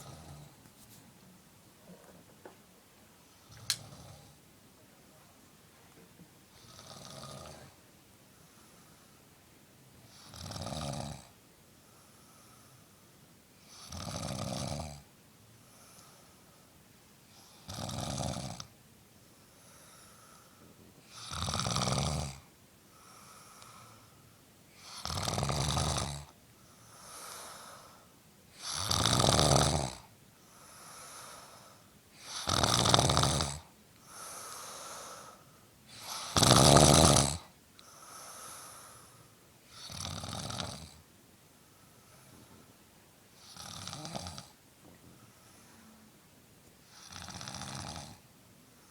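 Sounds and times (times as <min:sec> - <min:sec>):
man snoring: 0:00.0 - 0:00.5, 0:06.6 - 0:07.8, 0:10.2 - 0:11.3, 0:13.8 - 0:15.0, 0:17.6 - 0:18.7, 0:21.1 - 0:22.4, 0:24.8 - 0:26.3, 0:28.6 - 0:30.1, 0:32.2 - 0:35.4, 0:36.0 - 0:37.5, 0:39.8 - 0:41.0, 0:43.4 - 0:44.6, 0:46.9 - 0:48.2
faint breathing: 0:07.4 - 0:09.4, 0:11.8 - 0:13.8, 0:15.6 - 0:17.7, 0:19.2 - 0:21.2, 0:22.8 - 0:25.0, 0:26.6 - 0:28.2, 0:30.4 - 0:32.3, 0:34.0 - 0:36.4, 0:37.8 - 0:39.9, 0:41.6 - 0:44.1, 0:44.9 - 0:46.2, 0:48.6 - 0:48.9.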